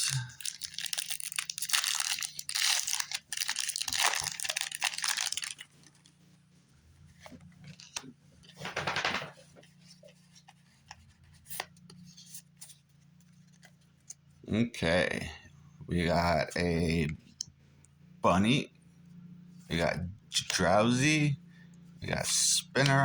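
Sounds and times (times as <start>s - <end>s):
foil pack crinkling and tearing: 0.0s - 6.1s.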